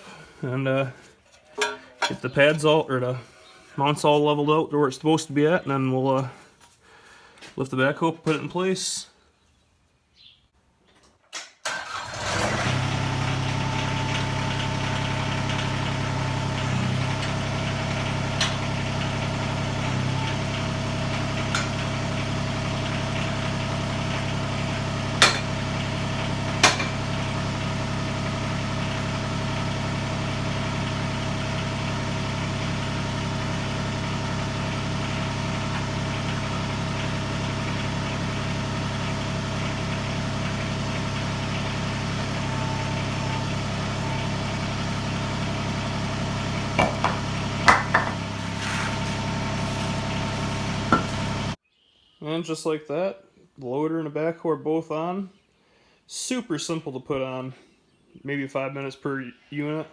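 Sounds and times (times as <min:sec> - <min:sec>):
diesel engine starting and idling: 0:11.6 - 0:51.6.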